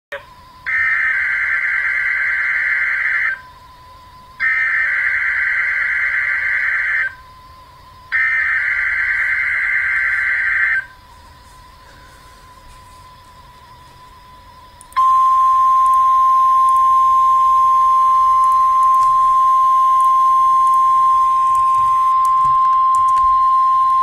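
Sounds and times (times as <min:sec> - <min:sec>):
faint steady tone: 0:00.1 - 0:24.0
warbling digital data tones: 0:08.3 - 0:24.0.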